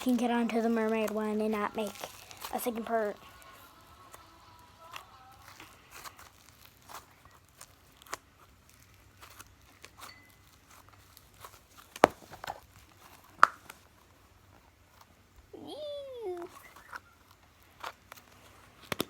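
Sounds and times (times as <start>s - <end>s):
slime and plastic container crackles: 0.0s - 4.2s, 4.9s - 14.3s.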